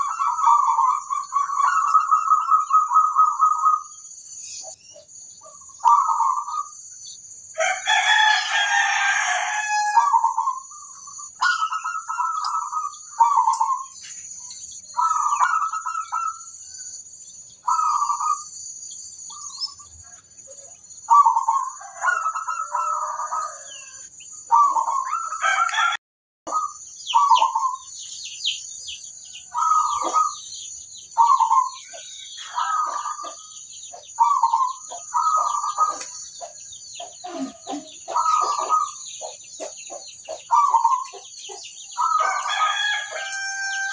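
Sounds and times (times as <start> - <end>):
doves cooing: 0.0 - 4.0, 5.4 - 6.7, 7.6 - 14.0, 14.9 - 16.5, 17.6 - 18.5, 20.5 - 25.9, 29.4 - 30.5, 31.2 - 41.3
harsh bird call: 29.3 - 39.7.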